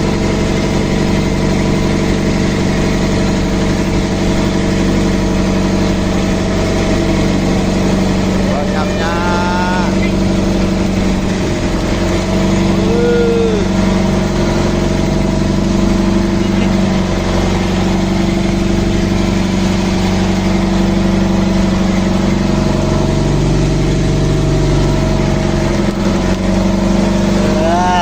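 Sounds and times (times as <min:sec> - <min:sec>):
engine humming steadily: 0:00.0 - 0:28.0.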